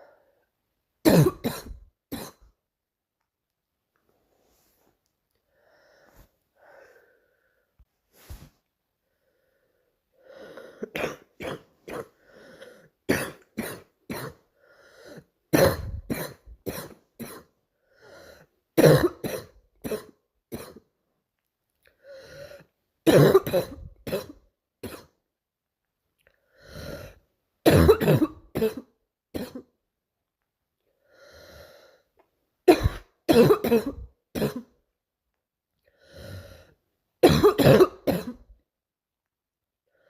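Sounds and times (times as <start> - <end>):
girl coughing: 1.1 - 2.5, 10.8 - 12.2, 13.1 - 14.4, 15.5 - 17.6, 18.8 - 20.8, 23.1 - 25.2, 27.7 - 29.7, 32.7 - 34.7, 37.2 - 38.5
faint breaths: 4.1 - 10.9, 12.2 - 13.0.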